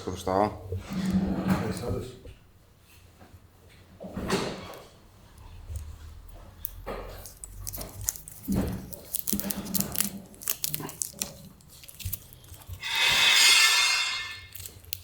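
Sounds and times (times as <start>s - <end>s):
packaging crackling and snapping: 5.4s - 12.9s, 14.4s - 15.0s
packaging tearing: 6.6s - 13.0s, 14.2s - 15.0s.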